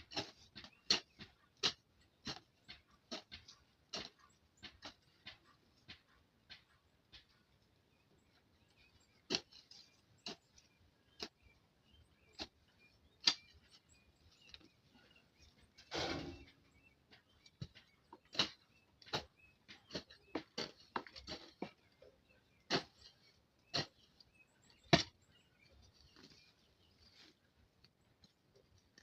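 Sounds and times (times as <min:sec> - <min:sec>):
hoe striking into soil: 0:00.0 - 0:05.0, 0:15.9 - 0:16.6, 0:18.3 - 0:21.7, 0:22.7 - 0:23.1, 0:23.7 - 0:24.2, 0:24.8 - 0:25.2.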